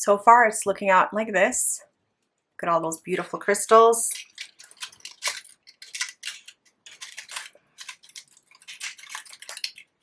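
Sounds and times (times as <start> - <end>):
stiff paper crinkling and rustling: 4.1 - 10.0.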